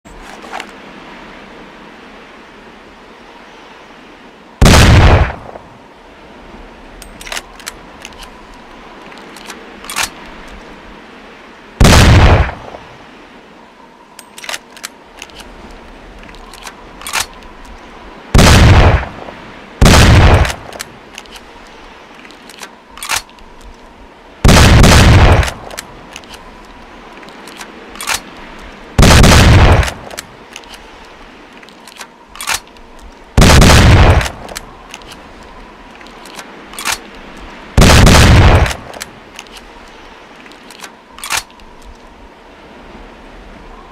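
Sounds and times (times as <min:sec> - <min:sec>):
shotgun blasts: 0:04.6 - 0:05.6, 0:11.8 - 0:12.7, 0:18.4 - 0:19.1, 0:19.8 - 0:20.6, 0:24.4 - 0:25.6, 0:29.0 - 0:30.1, 0:33.4 - 0:34.4, 0:37.8 - 0:38.9
metallic gun handling clicks: 0:07.0 - 0:10.6, 0:14.2 - 0:17.8, 0:22.2 - 0:23.8, 0:25.4 - 0:28.3, 0:29.8 - 0:33.2, 0:34.1 - 0:37.5, 0:38.6 - 0:42.0.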